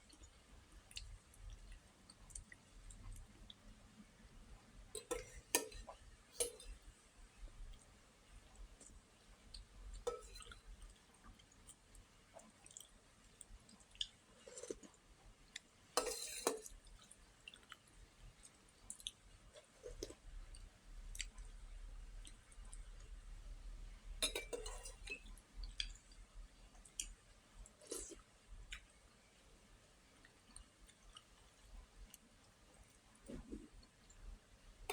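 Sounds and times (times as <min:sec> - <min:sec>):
chewing with wet mouth smacks: 0:12.4 - 0:15.7, 0:16.8 - 0:21.6.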